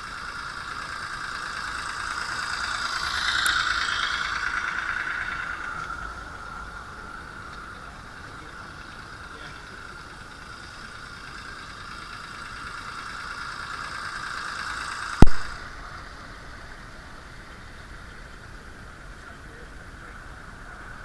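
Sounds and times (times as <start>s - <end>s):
model locomotive whine: 0.0s - 21.0s
sharp loud knock: 15.2s - 15.6s.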